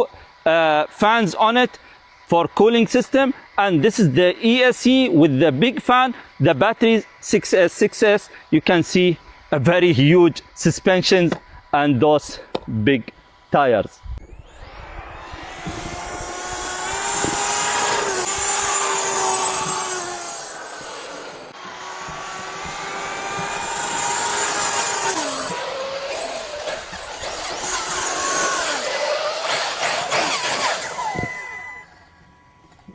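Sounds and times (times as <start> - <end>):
electric motor whining: 14.0 - 32.9
tyre and drivetrain rush: 14.2 - 32.9.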